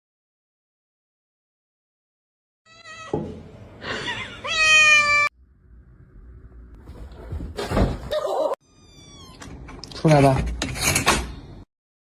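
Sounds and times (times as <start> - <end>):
cat meowing: 2.7 - 3.2, 4.4 - 5.3, 8.6 - 9.5.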